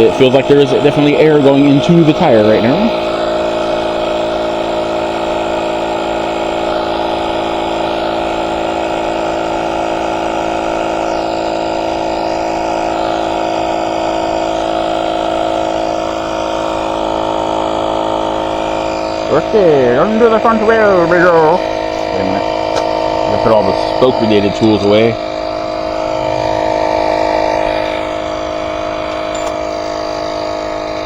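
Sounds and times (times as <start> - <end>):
tire inflator compressor running: 0.0 - 31.0.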